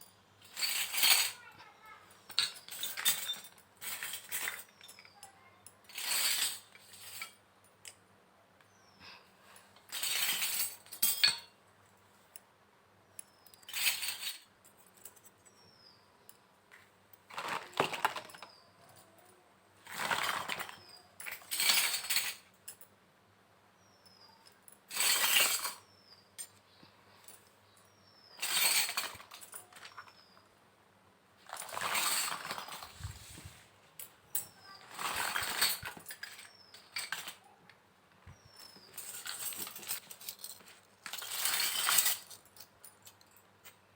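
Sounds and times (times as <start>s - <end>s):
toy kitchen pieces clinking: 0.5s - 1.5s, 2.2s - 8.0s, 9.9s - 11.6s, 13.2s - 15.3s, 17.3s - 22.8s, 28.4s - 30.3s, 31.5s - 33.1s, 34.3s - 37.4s, 38.6s - 43.8s.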